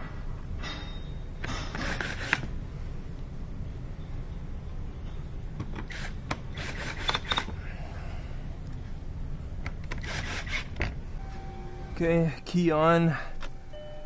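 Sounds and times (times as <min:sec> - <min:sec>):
steady low hum: 0:00.0 - 0:14.0
tools and bolts clicking: 0:05.6 - 0:07.5.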